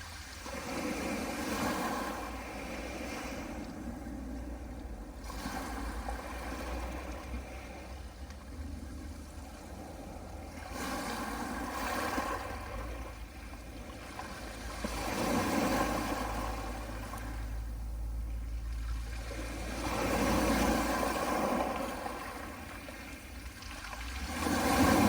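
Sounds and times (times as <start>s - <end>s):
waves washing onto pebble beach: 10.6s - 13.1s, 19.0s - 25.0s.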